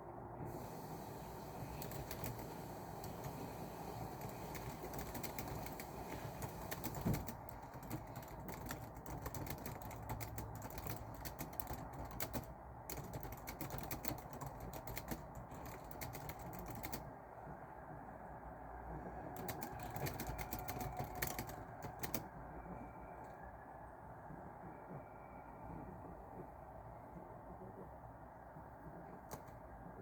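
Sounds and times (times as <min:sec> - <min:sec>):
keyboard typing: 0:01.4 - 0:17.1, 0:19.4 - 0:22.3, 0:29.3 - 0:29.6.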